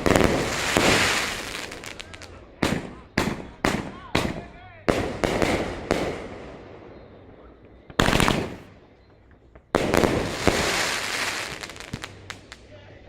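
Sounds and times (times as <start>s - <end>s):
crackling hiss of fireworks: 0.0s - 13.0s
fireworks exploding: 0.0s - 13.0s.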